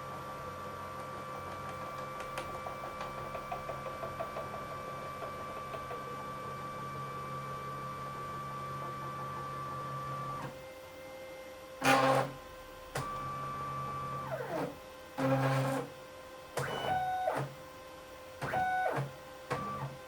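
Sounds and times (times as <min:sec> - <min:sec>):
motor whine and hum: 0:00.0 - 0:20.0.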